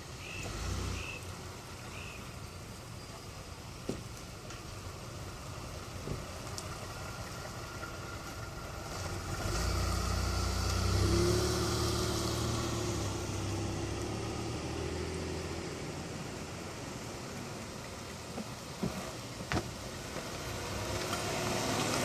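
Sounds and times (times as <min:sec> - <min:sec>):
car engine starting and idling: 0:04.6 - 0:22.0.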